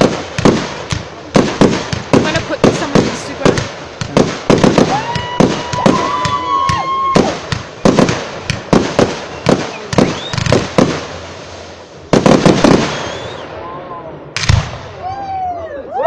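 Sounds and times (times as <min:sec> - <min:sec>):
fireworks bangs: 0:00.0 - 0:15.5
high whistling tone: 0:09.2 - 0:10.5, 0:12.9 - 0:14.0.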